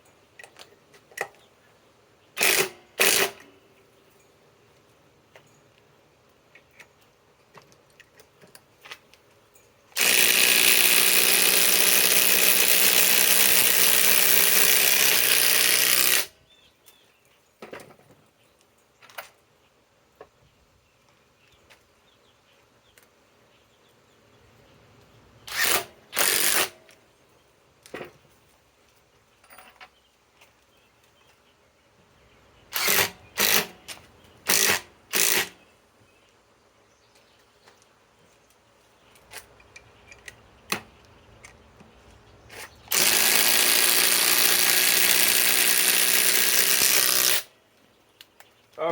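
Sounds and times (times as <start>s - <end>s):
impact driver driving screw into wood: 2.4s - 3.5s, 10.0s - 16.3s, 25.5s - 26.8s, 32.7s - 35.6s, 42.5s - 47.5s.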